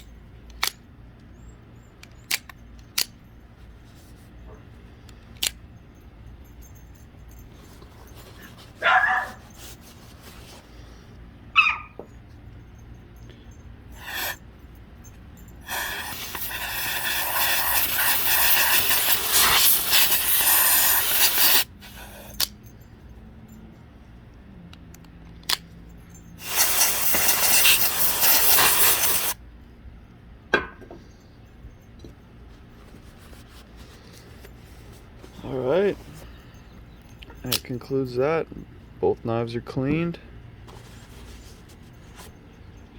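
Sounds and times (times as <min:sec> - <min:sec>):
knife mechanism clicks: 0:00.4 - 0:00.8, 0:02.0 - 0:03.2, 0:05.3 - 0:05.6, 0:22.3 - 0:22.6
aerosol can spraying: 0:14.0 - 0:14.4, 0:15.7 - 0:22.3, 0:26.4 - 0:29.4.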